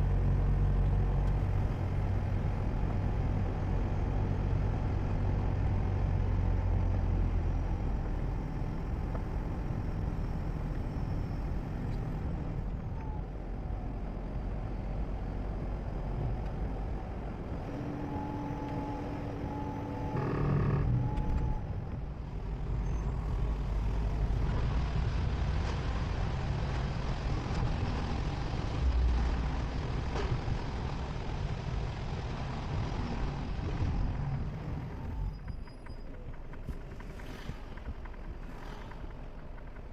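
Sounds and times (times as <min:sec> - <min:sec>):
car engine and tyre noise: 0:00.0 - 0:39.9
brief tone: 0:17.6 - 0:21.9, 0:22.8 - 0:23.5, 0:34.9 - 0:37.6.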